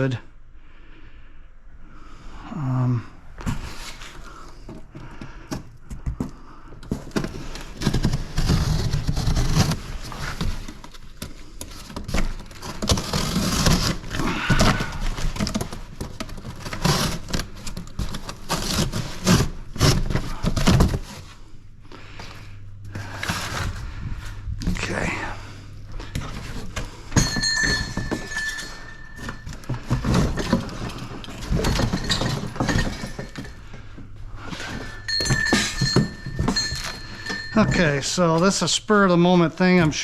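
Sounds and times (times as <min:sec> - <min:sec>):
steady low hum: 0:00.0 - 0:40.0
scrap metal clattering and scraping: 0:25.9 - 0:38.7.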